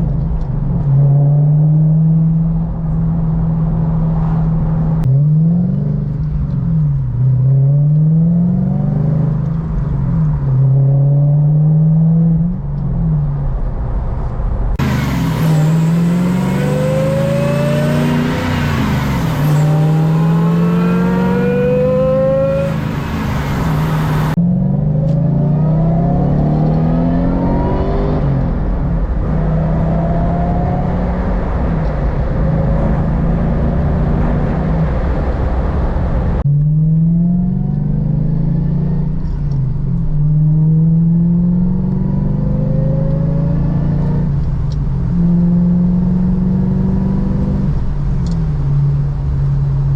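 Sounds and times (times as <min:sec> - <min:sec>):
car accelerating through gears: 0:14.8 - 0:35.0, 0:36.4 - 0:44.4.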